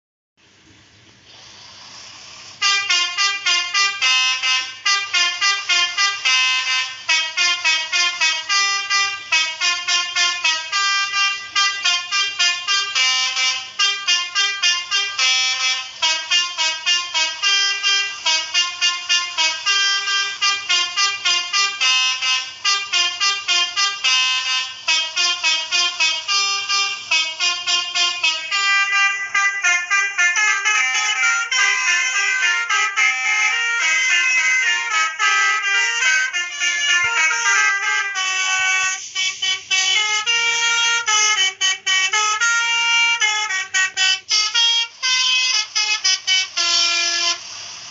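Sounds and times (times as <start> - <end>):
faint hiss: 0.4 - 31.1, 37.0 - 43.7, 44.3 - 47.9
multi-tone bus horn melody: 2.3 - 47.9.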